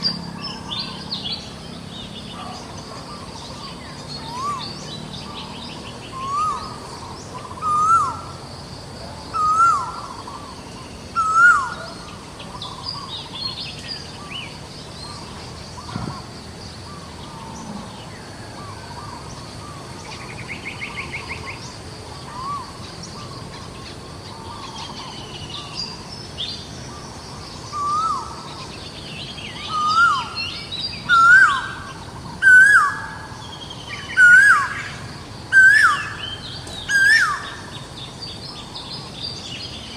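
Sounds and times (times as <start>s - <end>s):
bird chirps: 22.3s - 39.9s.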